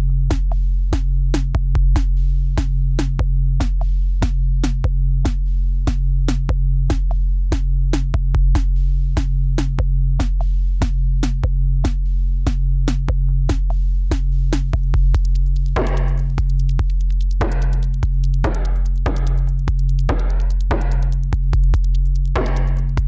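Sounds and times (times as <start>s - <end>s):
low bass drone: 0.0s - 0.4s, 14.4s - 23.0s
clicking drum-machine beat: 0.0s - 23.0s.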